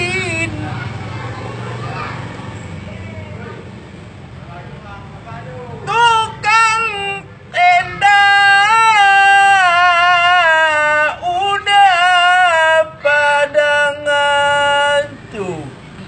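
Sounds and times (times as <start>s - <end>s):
person chanting melodically: 0.0s - 1.0s, 5.8s - 15.8s.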